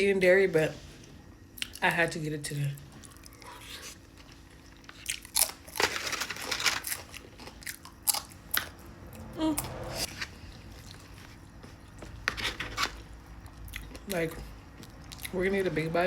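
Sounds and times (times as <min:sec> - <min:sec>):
person chewing food: 0:02.9 - 0:05.8, 0:06.9 - 0:09.2, 0:13.0 - 0:15.3.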